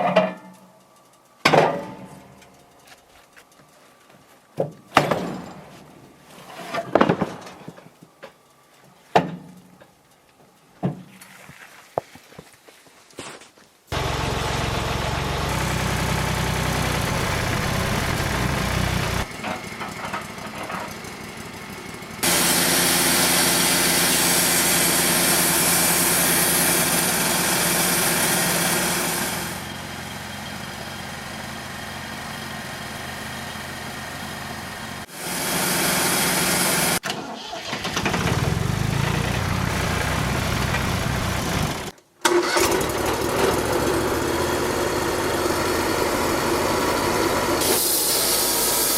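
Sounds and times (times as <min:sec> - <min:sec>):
sawmill engine running: 0:13.9 - 0:48.9
band blade cutting log: 0:22.2 - 0:29.6.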